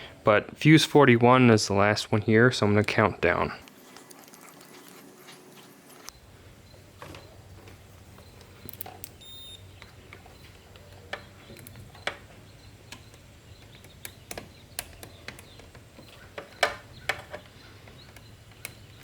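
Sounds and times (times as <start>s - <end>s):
multimeter probes clicking on fuses: 7.0s - 19.0s.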